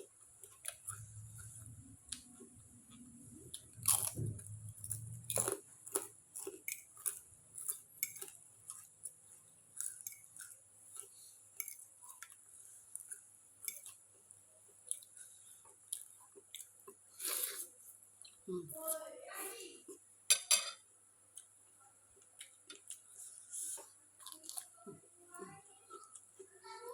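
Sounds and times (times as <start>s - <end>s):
crunchy crackers being chewed: 0.0s - 18.4s, 21.3s - 26.9s.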